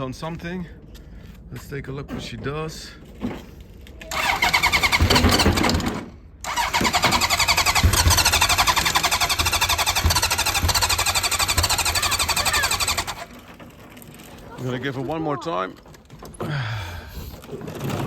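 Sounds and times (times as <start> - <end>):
electric starter cranking engine: 4.0 - 14.5, 15.5 - 18.0.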